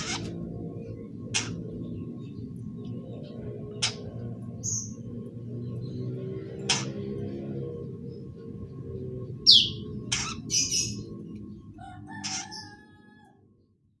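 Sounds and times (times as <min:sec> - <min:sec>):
young bird harsh calls: 0:00.0 - 0:00.4, 0:01.3 - 0:01.6, 0:09.5 - 0:11.0
low steady background sound: 0:00.0 - 0:14.0.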